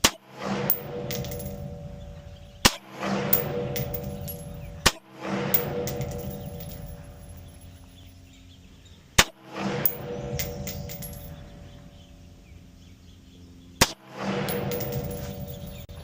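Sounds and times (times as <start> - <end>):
metal clanks: 0.6 - 8.0, 14.4 - 16.0.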